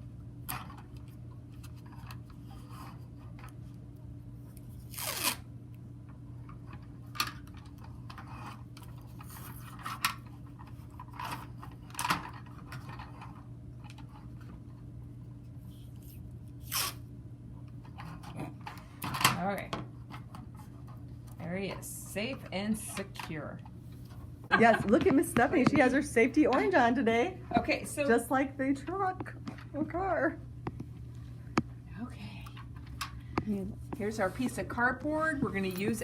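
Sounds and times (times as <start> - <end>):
steady low hum: 0.0 - 36.0
adhesive tape ripping: 4.8 - 5.4, 16.6 - 17.0.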